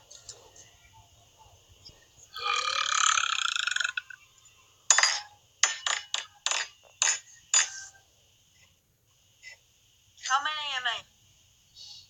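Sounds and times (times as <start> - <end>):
woman belching: 2.4 - 4.1.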